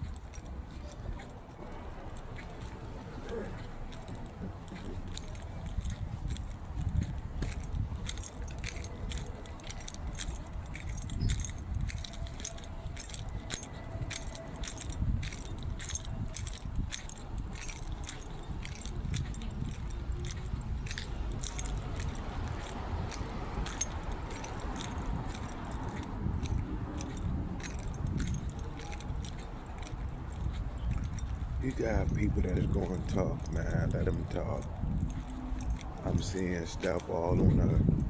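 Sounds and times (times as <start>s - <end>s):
light jingling and clicking: 0.0s - 38.0s.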